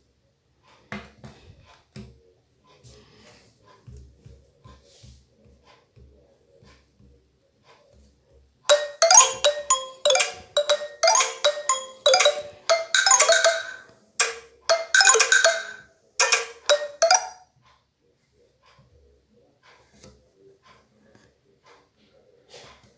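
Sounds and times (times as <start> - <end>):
phone ringtone melody: 8.7 - 17.4.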